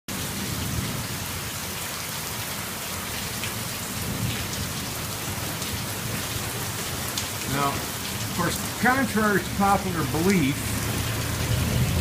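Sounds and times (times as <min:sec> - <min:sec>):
heavy rain pouring: 0:00.1 - 0:12.0.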